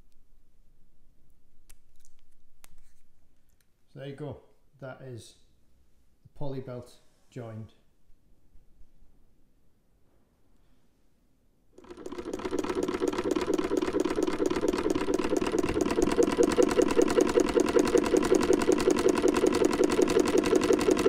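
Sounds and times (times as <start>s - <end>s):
sewing machine running: 11.8s - 21.0s.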